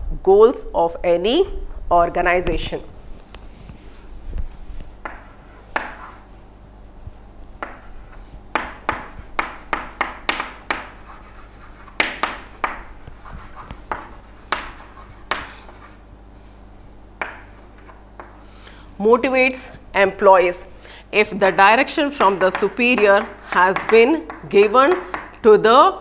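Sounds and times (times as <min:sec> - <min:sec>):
pen scratching on paper: 0:05.0 - 0:06.2, 0:07.6 - 0:08.2, 0:08.9 - 0:16.0.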